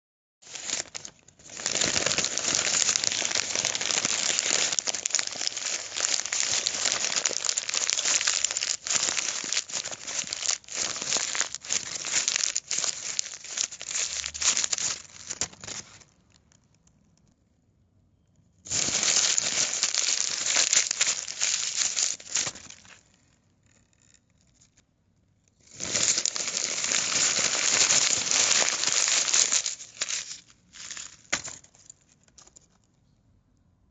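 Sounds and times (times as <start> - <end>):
paper being crumpled: 0.5 - 16.2, 18.7 - 23.0, 25.7 - 32.8.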